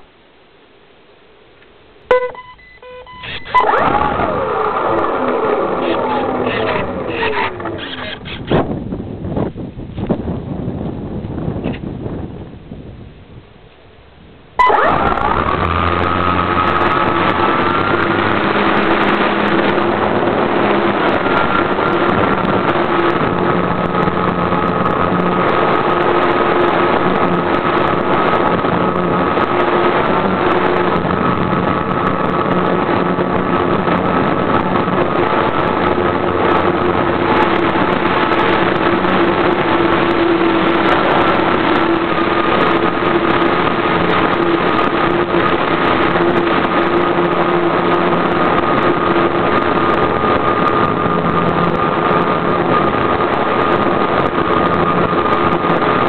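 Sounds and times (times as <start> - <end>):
model airplane motor running: 3.1 - 8.6, 14.6 - 56.0.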